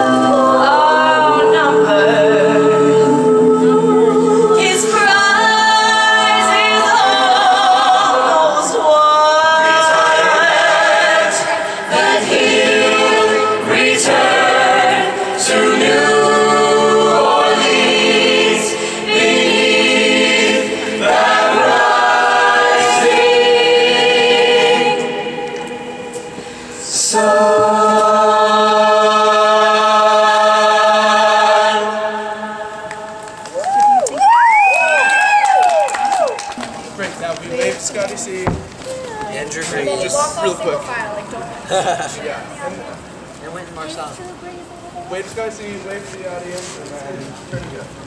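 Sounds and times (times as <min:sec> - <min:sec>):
a cappella group singing: 0:00.0 - 0:33.4.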